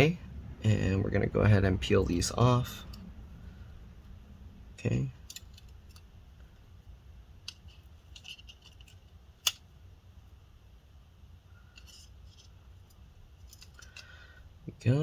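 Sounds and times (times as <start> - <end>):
faint clicks and scratches: 7.4 - 9.6, 11.7 - 14.2.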